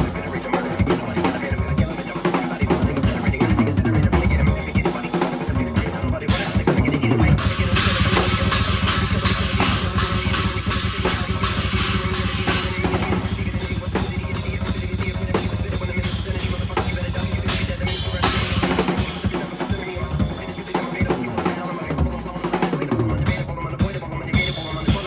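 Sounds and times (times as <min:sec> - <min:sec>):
acoustic drum kit playing fast: 0:00.0 - 0:25.0
backing track with bass: 0:00.0 - 0:25.0.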